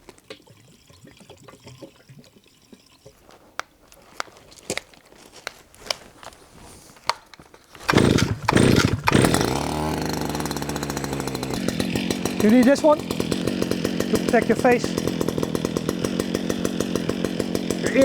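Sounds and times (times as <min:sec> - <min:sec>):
handling clicks and knocks: 0:03.6 - 0:09.6
brush cutter engine starting and running: 0:06.7 - 0:18.0.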